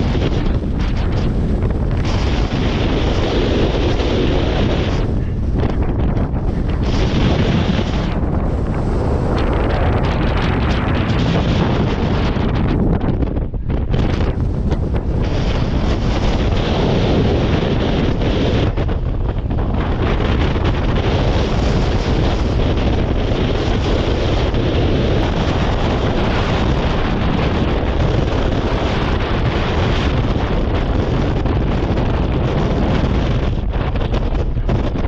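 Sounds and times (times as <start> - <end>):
wind buffeting microphone: 0.0 - 35.0.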